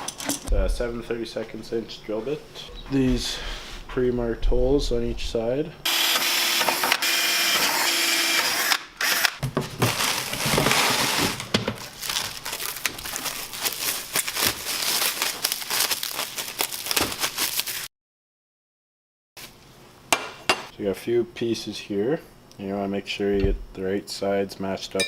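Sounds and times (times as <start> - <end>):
power drill whirring: 5.9 - 9.4.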